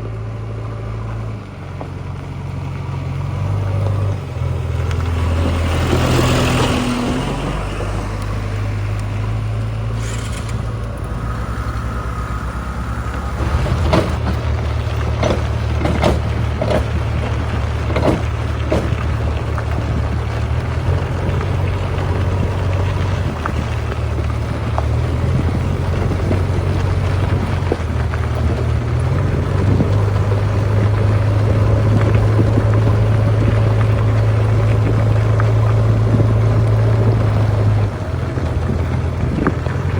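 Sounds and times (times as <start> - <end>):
diesel engine running: 0.0 - 39.9
sharp knocks and clunks: 13.0 - 21.4.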